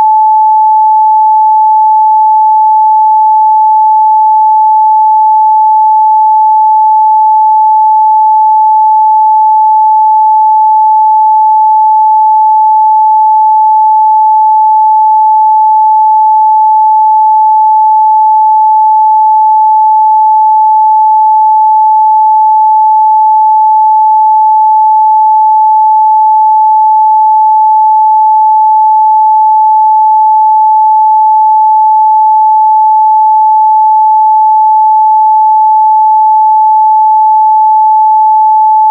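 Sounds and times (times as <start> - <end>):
sine-wave test tone: 0.0 - 38.9.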